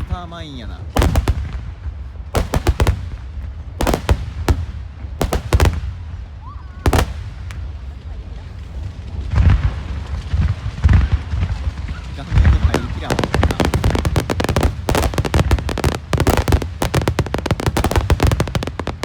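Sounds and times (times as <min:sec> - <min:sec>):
deep firework booms with crackling: 0:00.0 - 0:19.0
firework bangs: 0:00.0 - 0:19.0.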